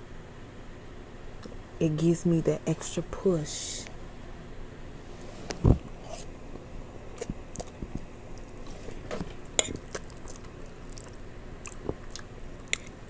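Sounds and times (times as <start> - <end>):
chewing and mouth smacks: 7.1 - 13.0.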